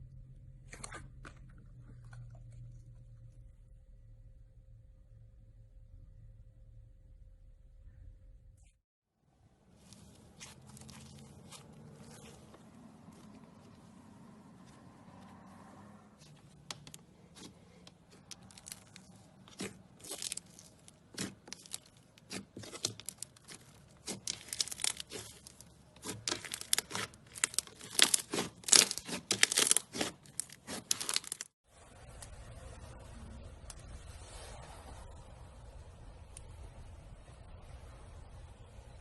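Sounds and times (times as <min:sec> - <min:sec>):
slime crackling and popping: 0:16.7 - 0:31.5.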